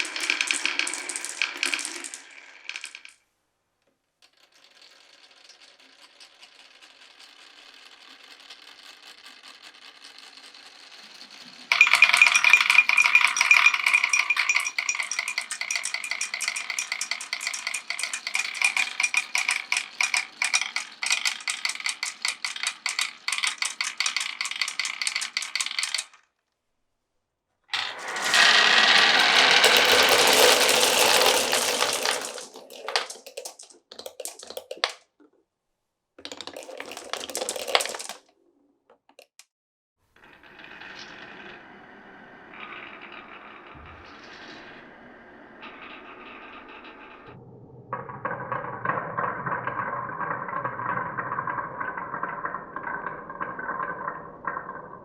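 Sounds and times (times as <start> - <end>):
marbles rattling down wooden run: 0.0 - 3.2, 4.2 - 26.2, 27.8 - 35.1, 36.2 - 38.3, 47.9 - 55.0.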